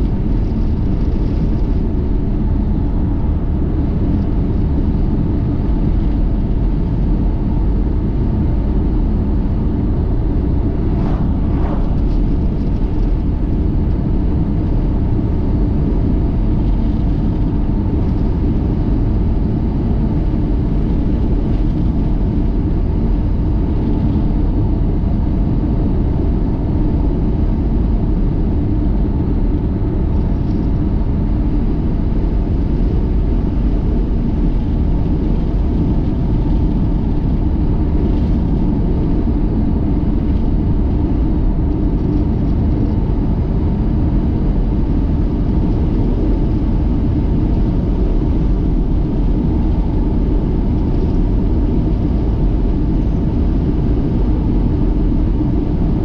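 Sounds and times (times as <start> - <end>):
car engine and tyre noise: 0.0 - 24.2.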